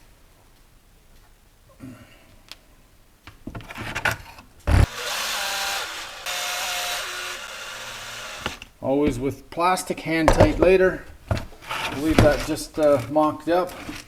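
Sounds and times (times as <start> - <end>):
cordless screwdriver driving screws: 4.7 - 8.8.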